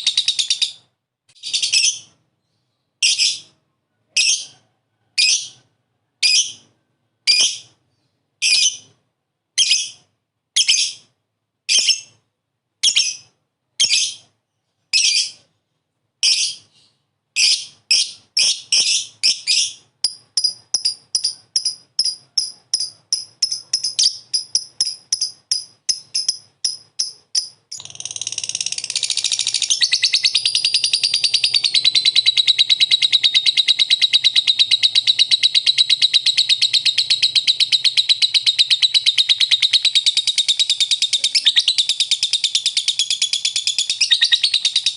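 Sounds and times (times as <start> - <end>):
lovebird chirping: 0.0 - 4.6, 5.2 - 9.0, 9.6 - 11.1, 11.7 - 12.2, 12.8 - 15.6, 16.2 - 44.9
lovebird fast chatter: 20.1 - 44.9.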